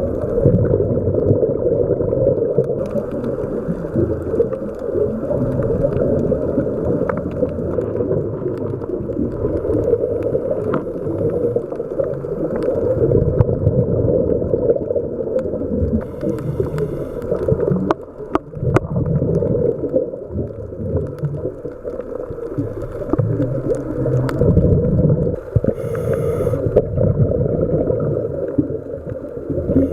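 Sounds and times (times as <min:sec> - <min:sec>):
diver's exhaled air bubbles: 0:00.0 - 0:29.9
sharp underwater clicks: 0:02.6 - 0:13.5, 0:15.3 - 0:26.9.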